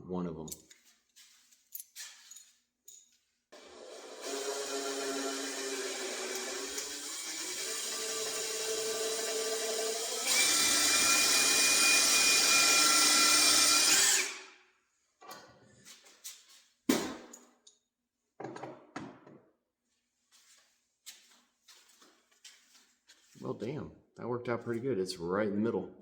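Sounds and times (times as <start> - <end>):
power drill boring into wood: 3.6 - 14.5.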